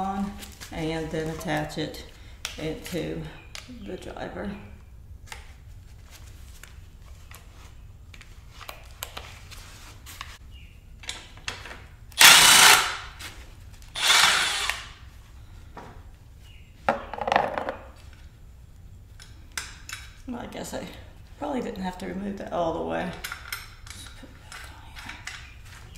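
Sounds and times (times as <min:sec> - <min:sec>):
impact driver bursts: 0:12.2 - 0:13.2, 0:14.0 - 0:15.0.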